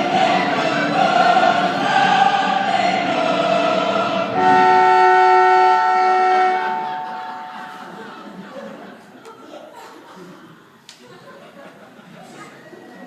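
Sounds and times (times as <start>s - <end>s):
voices singing together: 0.0s - 8.9s
multi-tone horn blast: 4.2s - 8.2s.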